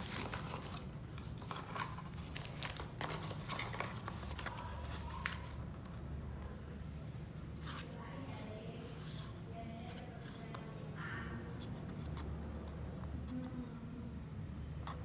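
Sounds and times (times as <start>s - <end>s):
packaging tearing: 0.0s - 4.5s
packaging crinkling and rustling: 0.0s - 5.6s.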